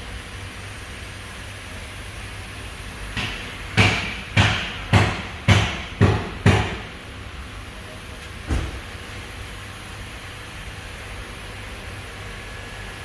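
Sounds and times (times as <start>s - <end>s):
sharp ringing knocks: 3.2s - 6.9s.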